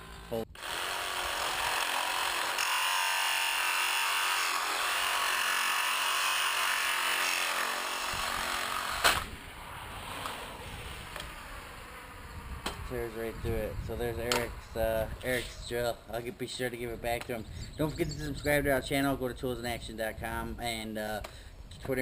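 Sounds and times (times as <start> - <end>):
power saw cutting: 0.0 - 12.8.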